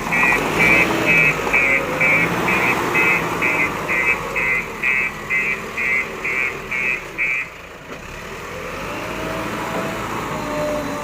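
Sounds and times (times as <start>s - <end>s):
diesel engine running: 0.0s - 11.0s
reversing alarm beeping: 0.1s - 7.5s.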